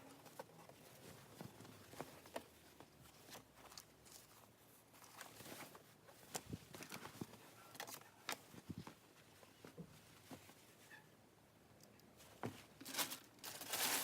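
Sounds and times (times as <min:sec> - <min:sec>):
packaging rustling: 0:12.8 - 0:14.0.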